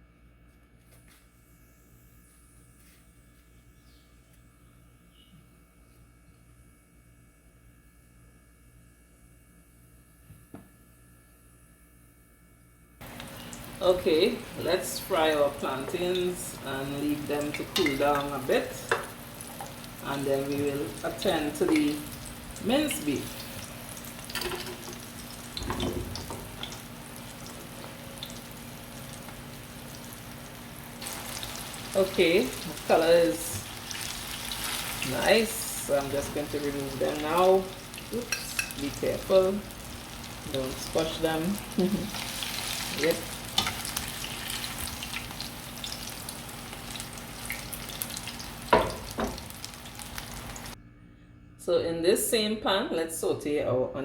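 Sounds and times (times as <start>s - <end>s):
plantains sizzling in oil: 13.0s - 50.8s.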